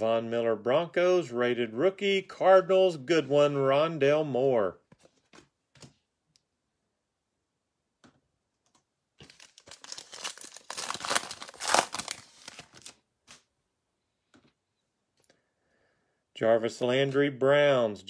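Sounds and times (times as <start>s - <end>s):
foil wrapper tearing and crinkling: 9.2s - 13.4s.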